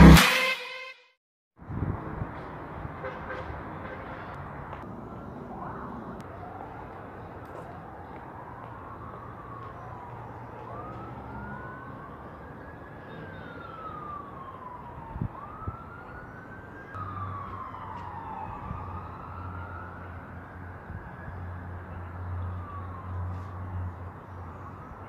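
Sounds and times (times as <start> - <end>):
wailing emergency siren: 5.3 - 25.0
second siren: 5.4 - 25.0.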